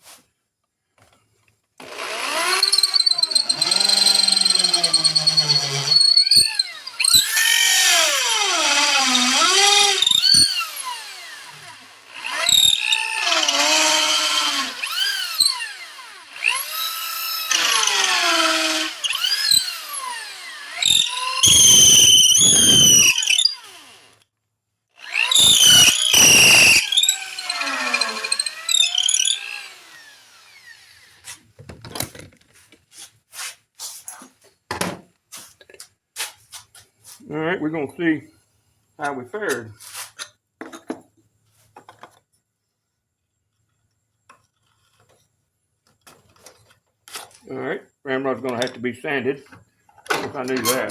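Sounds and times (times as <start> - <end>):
electric drill boring into wood: 1.8 - 24.2, 25.0 - 31.4.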